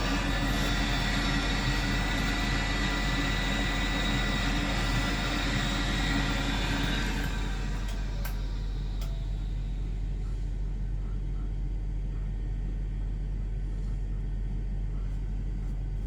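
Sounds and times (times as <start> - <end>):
steady whining tones: 0.0 - 10.4
boiler plant fans and pumps humming: 0.0 - 16.0.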